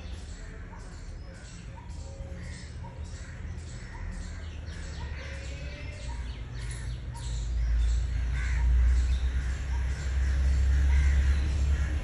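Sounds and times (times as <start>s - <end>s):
crows cawing: 2.4s - 5.8s, 8.2s - 12.0s.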